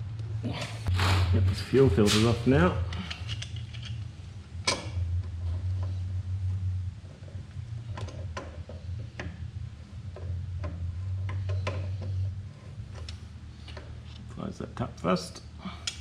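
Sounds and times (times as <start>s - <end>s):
steady low hum: 0.0s - 16.0s
tools clicking and knocking: 2.9s - 4.0s.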